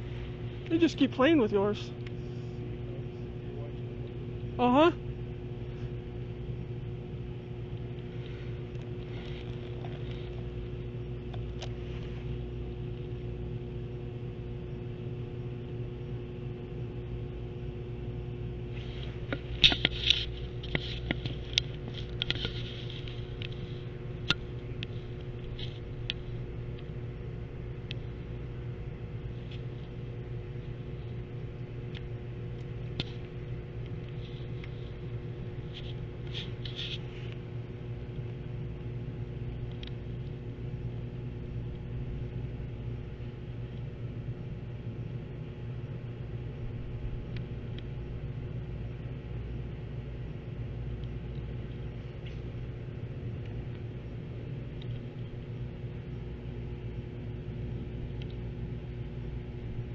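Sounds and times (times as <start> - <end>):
steady low hum: 0.0 - 59.9
short clicks and scrapes: 18.8 - 26.2.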